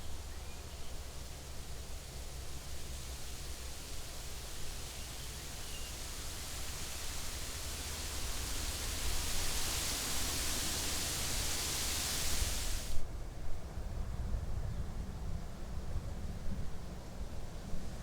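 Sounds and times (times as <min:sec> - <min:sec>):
rushing hiss: 0:00.9 - 0:13.0.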